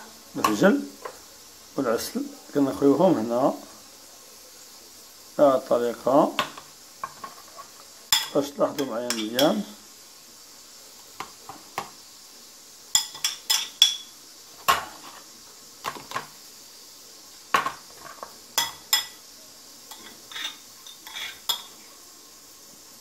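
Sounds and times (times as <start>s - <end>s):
utensils clinking against bowl: 13.0s - 14.1s, 19.9s - 21.8s.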